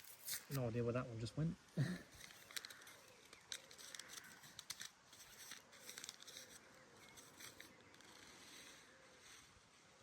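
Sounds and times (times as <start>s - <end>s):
paper seed packet rustling: 2.1s - 9.4s.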